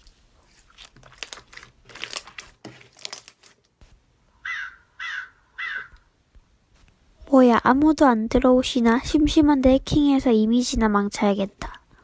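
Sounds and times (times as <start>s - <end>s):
crinkling handling noise: 0.0s - 4.1s
crow cawing: 4.4s - 6.1s.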